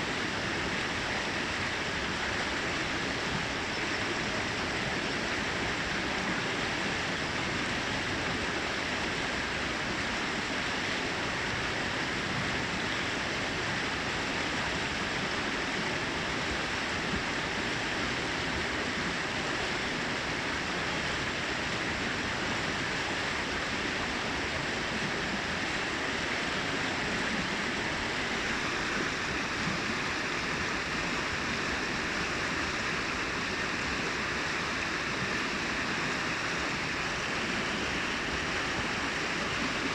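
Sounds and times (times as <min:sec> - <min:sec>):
brook water rushing over rocks: 0:00.0 - 0:39.9.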